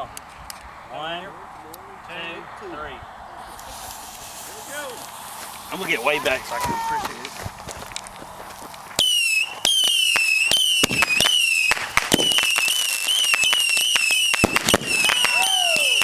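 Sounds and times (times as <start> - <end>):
fireworks whistling: 3.4 - 7.5, 8.9 - 16.0
fireworks popping and banging: 3.5 - 16.0.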